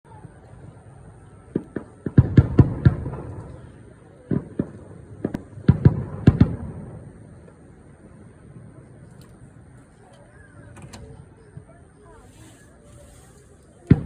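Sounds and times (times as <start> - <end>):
fireworks bangs with rumbling echo: 0.1 - 9.7, 13.8 - 14.0.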